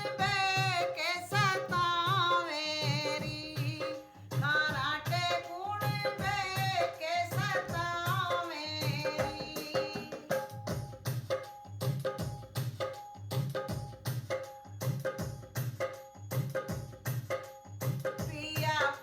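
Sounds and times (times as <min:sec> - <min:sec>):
woman singing: 0:00.0 - 0:10.5, 0:18.3 - 0:19.0
hand drum beat: 0:00.0 - 0:19.0.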